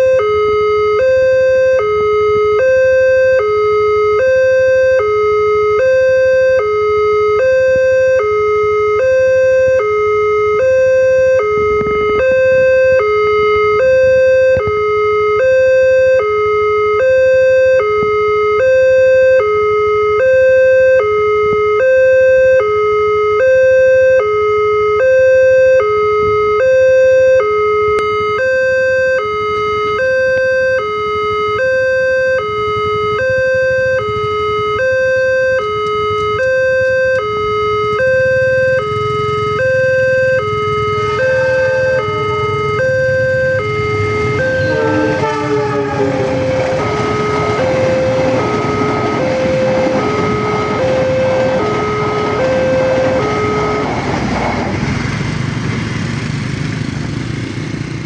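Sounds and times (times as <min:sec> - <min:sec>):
level-crossing two-tone alarm: 0:00.0 - 0:54.2
approaching train rumble: 0:42.1 - 0:58.0.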